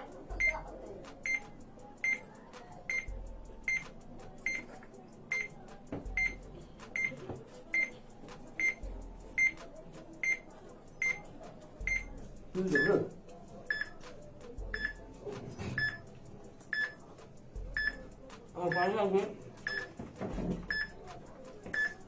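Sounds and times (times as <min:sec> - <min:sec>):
timer beeping: 0:00.3 - 0:02.3, 0:02.9 - 0:04.6, 0:05.3 - 0:08.0, 0:08.6 - 0:09.6, 0:10.2 - 0:14.0, 0:14.6 - 0:15.1, 0:15.8 - 0:16.1, 0:16.7 - 0:17.1, 0:17.7 - 0:19.0, 0:19.6 - 0:20.0, 0:20.7 - 0:21.1, 0:21.7 - 0:22.0.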